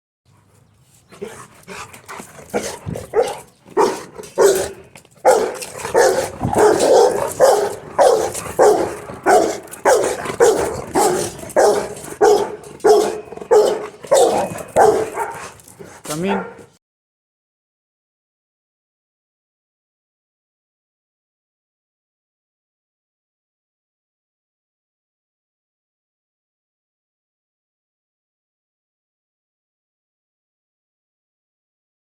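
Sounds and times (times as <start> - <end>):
dog barking: 2.5 - 16.8.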